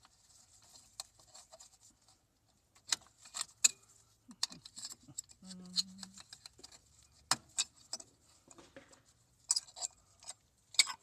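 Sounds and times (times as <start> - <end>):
soft rustling: 0.0 - 10.5
small parts clicking and tapping: 2.8 - 11.0.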